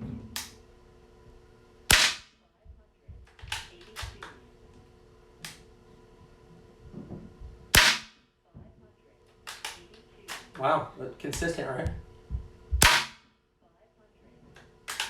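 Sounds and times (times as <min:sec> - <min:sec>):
air rifle shots: 0:01.9 - 0:02.4, 0:07.7 - 0:08.2, 0:12.8 - 0:13.3.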